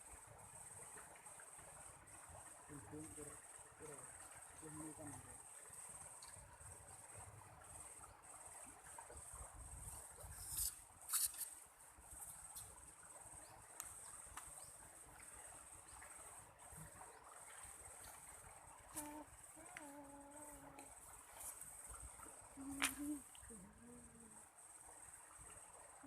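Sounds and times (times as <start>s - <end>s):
insect trilling: 10.0s - 11.6s, 18.1s - 25.1s.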